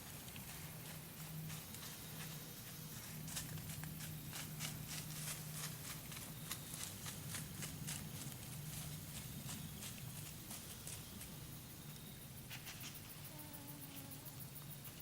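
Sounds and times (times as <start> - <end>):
deer hoof steps: 0.0 - 13.0.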